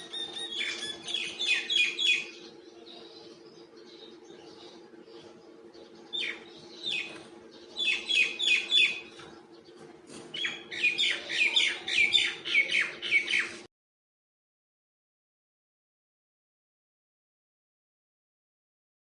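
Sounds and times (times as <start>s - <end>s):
myna chirping: 0.0s - 13.7s
steady low hum: 0.0s - 13.7s.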